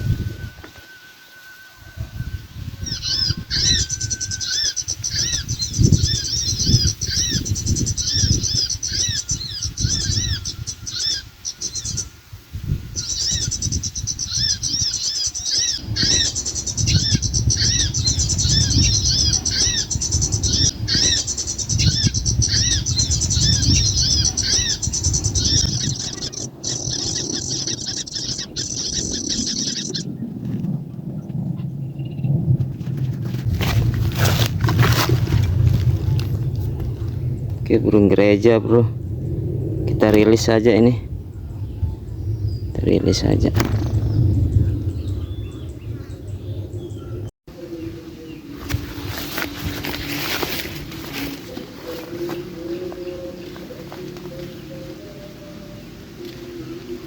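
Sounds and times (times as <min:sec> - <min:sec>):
thin steady whistle: 0:00.0 - 0:05.0
rapid high bird chirps: 0:02.6 - 0:12.2, 0:12.8 - 0:30.2
low rustling noise: 0:48.4 - 0:55.0.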